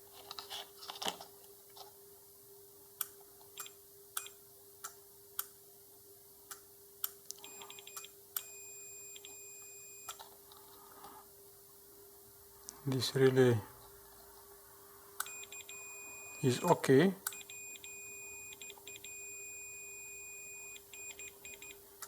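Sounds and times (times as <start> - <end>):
multimeter continuity beeping: 7.3 - 10.2, 15.2 - 21.8.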